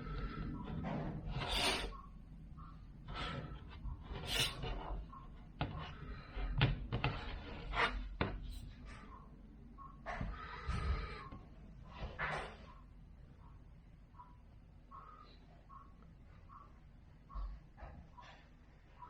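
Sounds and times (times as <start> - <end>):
rubbing on glass screen: 0.1 - 8.6.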